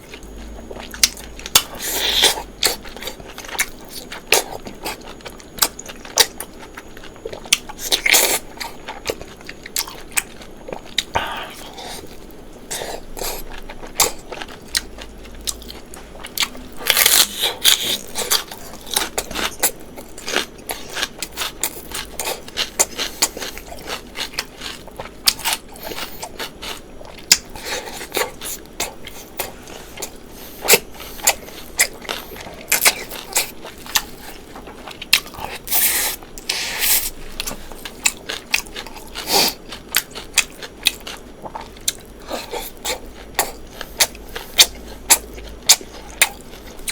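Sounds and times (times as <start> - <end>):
person chewing food: 0.0 - 46.9.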